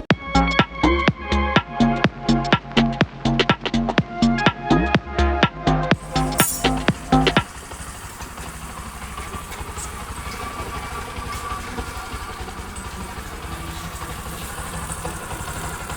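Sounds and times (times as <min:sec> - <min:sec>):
motorcycle engine idling: 0:06.0 - 0:15.9.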